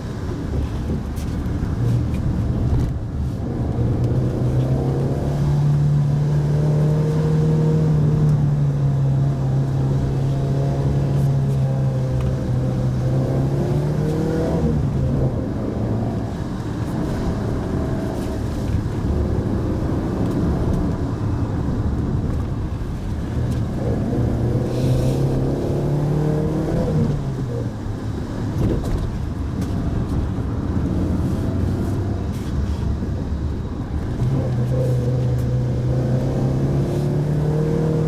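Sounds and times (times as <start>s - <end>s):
road noise rumble: 0.0s - 38.0s
car engine revving: 33.4s - 38.0s.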